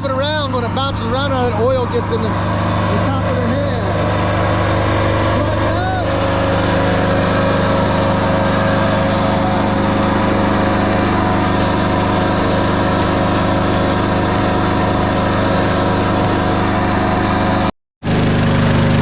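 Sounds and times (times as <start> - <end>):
small petrol engine running: 0.0 - 19.0.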